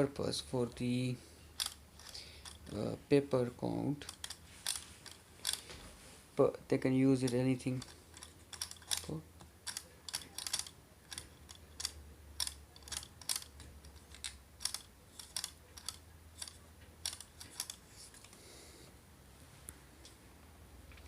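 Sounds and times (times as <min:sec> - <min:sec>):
plastic printer parts clicking: 0:07.2 - 0:18.3.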